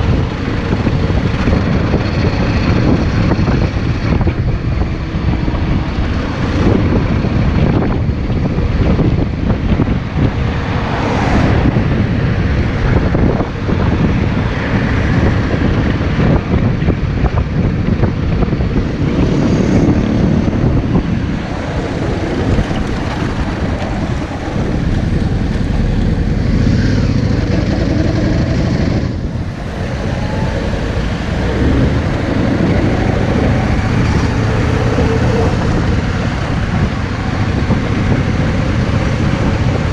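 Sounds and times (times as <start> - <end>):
wind noise on microphone: 0.0 - 39.9
motorcycle engine running: 15.1 - 39.9.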